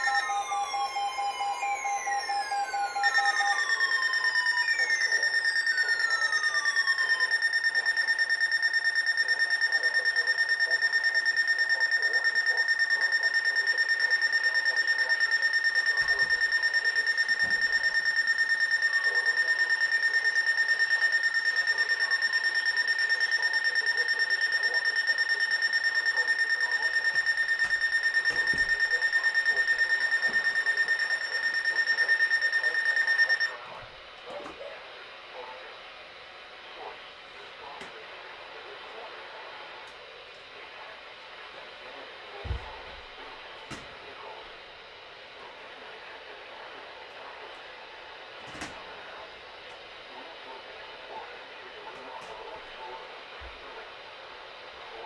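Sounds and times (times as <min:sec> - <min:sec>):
pulsing electronic alarm tone: 0:00.0 - 0:33.6.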